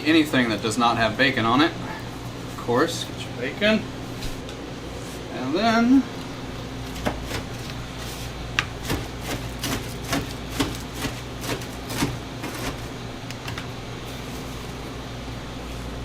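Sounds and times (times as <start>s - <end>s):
kitchen ventilation hum: 0.0s - 16.0s
knife chopping on cutting board: 7.0s - 7.5s, 8.6s - 12.8s.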